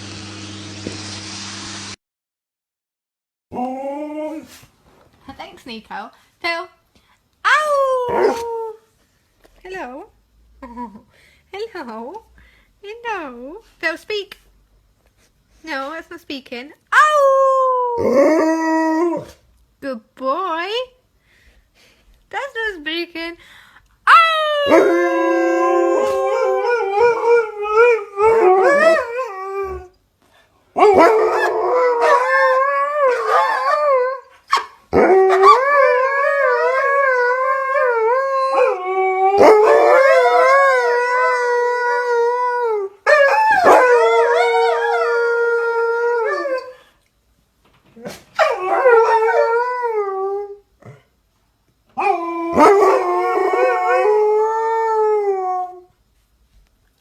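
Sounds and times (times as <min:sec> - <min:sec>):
dog howling: 0:07.5 - 0:08.8, 0:24.1 - 0:29.9, 0:30.8 - 0:34.3, 0:34.9 - 0:46.8, 0:48.4 - 0:50.6, 0:52.0 - 0:55.9.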